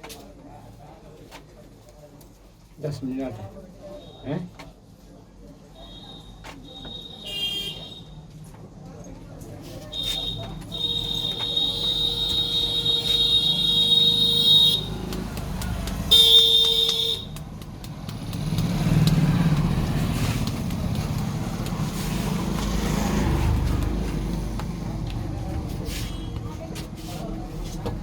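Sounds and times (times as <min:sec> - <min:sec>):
vehicle horn blasts: 0:07.2 - 0:08.1, 0:10.0 - 0:15.0, 0:16.1 - 0:17.3
passing vehicle rumble: 0:17.4 - 0:27.6.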